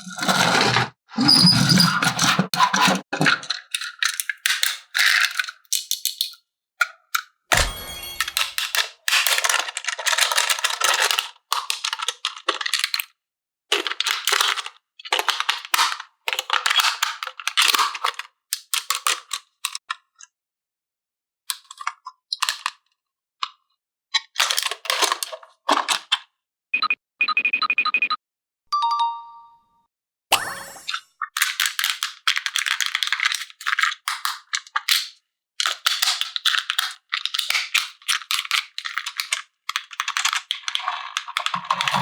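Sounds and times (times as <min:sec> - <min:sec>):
rustling of toy packaging: 0:02.2 - 0:06.3, 0:09.3 - 0:19.8, 0:24.4 - 0:26.2, 0:31.4 - 0:42.0
short ringing chime: 0:07.5 - 0:08.6, 0:28.8 - 0:30.9.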